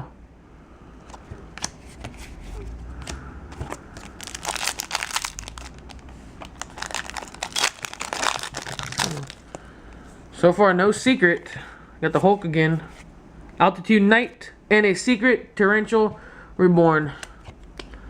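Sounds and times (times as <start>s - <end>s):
foil wrapper crinkling: 3.7s - 9.6s.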